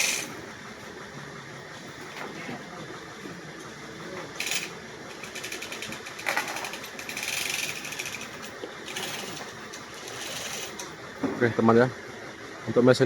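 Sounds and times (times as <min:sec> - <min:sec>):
hoist ratcheting clicks: 0:04.4 - 0:10.9
thump: 0:11.2 - 0:11.4.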